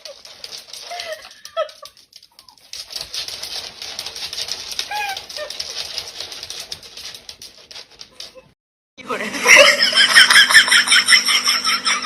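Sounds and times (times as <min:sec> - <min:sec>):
rustling and clattering: 0:00.0 - 0:08.6.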